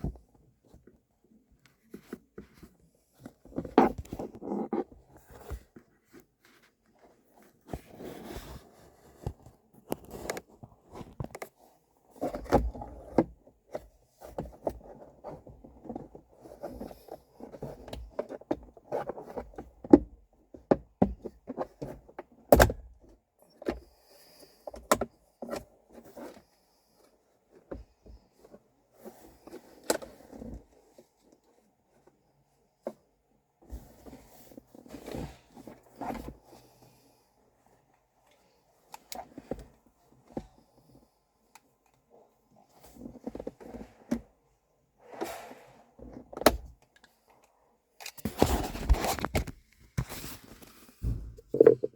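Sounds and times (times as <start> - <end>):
plastic parts clicking and knocking: 51.1 - 51.9.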